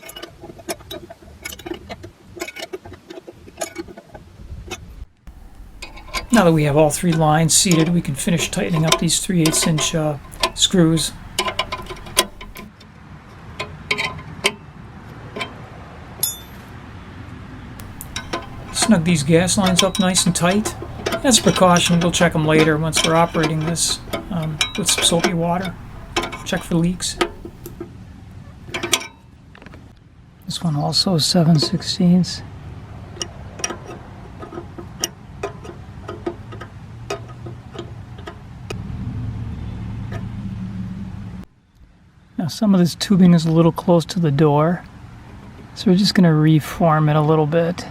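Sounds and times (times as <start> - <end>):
low steady hum: 5.3 - 12.7, 17.8 - 27.8
metallic clicks of hand tool: 5.3 - 12.7, 17.8 - 27.8.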